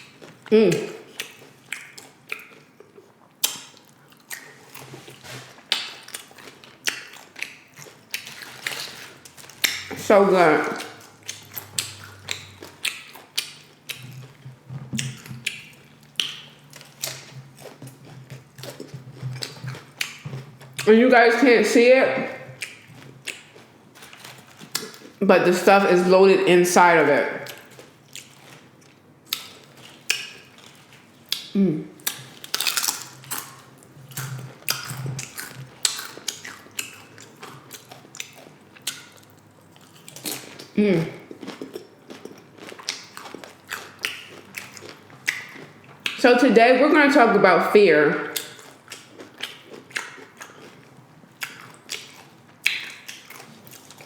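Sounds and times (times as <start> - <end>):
chewing crunchy chips: 0.0 - 21.0, 22.2 - 25.2, 27.4 - 46.2, 48.1 - 54.0
wet mouth clicks: 3.4 - 4.5, 51.4 - 53.5.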